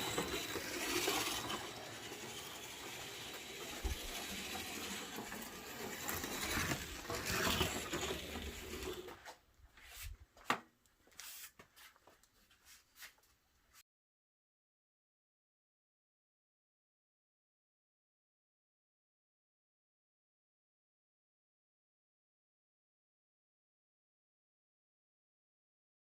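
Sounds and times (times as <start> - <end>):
slot car whirring rattle: 0.0 - 9.2.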